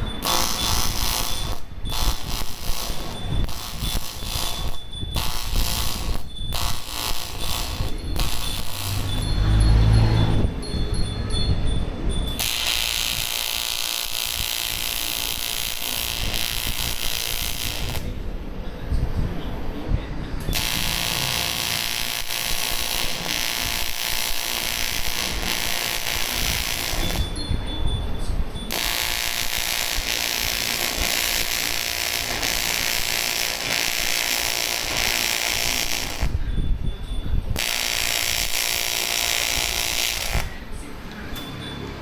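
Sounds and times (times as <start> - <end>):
welding arc buzzing hiss: 0.0 - 9.3, 12.4 - 18.2, 20.5 - 27.4, 28.7 - 36.4, 37.6 - 40.6.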